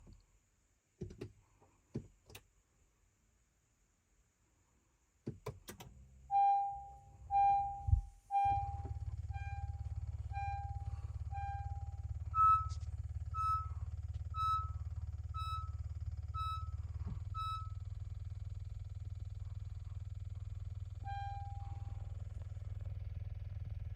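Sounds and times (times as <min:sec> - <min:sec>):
car warning chime beeping: 0:06.3 - 0:17.9, 0:21.0 - 0:22.3
steady low hum: 0:06.3 - 0:23.0.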